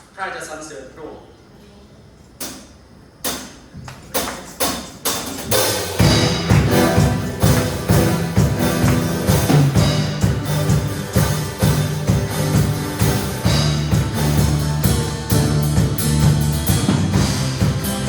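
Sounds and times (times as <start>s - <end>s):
percussion hits: 3.3s - 18.0s
band with bass and drums: 4.1s - 18.0s.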